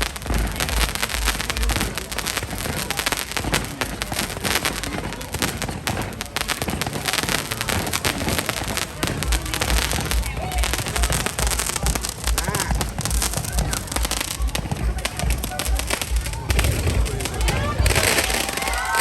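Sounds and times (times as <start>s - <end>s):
deep fireworks booms: 0.0s - 19.0s
fireworks crackling and banging: 0.0s - 19.0s.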